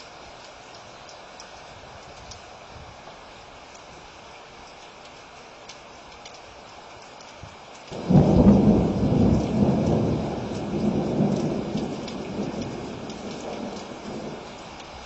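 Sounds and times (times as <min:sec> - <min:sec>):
steady rain: 0:00.0 - 0:15.0
thunder rumbling: 0:07.9 - 0:14.6.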